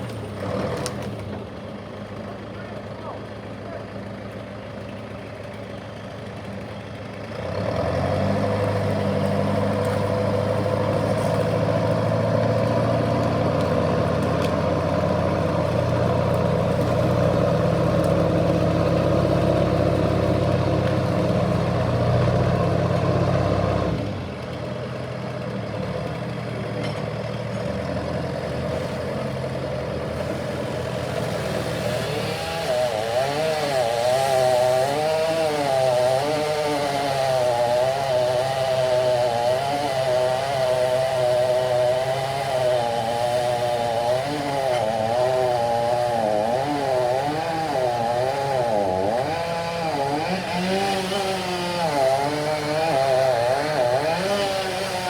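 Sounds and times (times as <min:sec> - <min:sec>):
chainsaw revving: 0:00.0 - 0:01.3, 0:06.6 - 0:24.4, 0:25.8 - 0:55.0
heavy vehicle engine running: 0:00.0 - 0:32.6.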